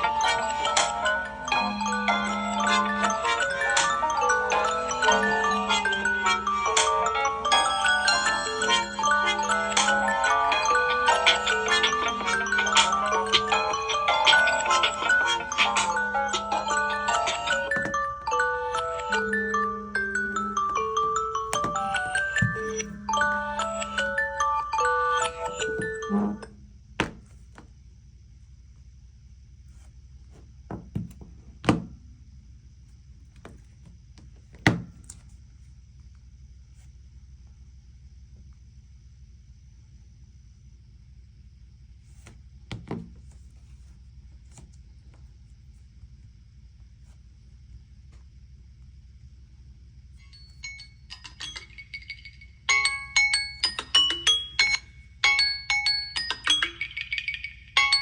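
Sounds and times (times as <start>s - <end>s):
phone ringing marimba melody: 0.0s - 26.4s, 50.6s - 58.0s
faint high electronic whine: 0.0s - 58.0s
low steady hum: 0.0s - 58.0s
light knocks and taps: 30.7s - 31.9s.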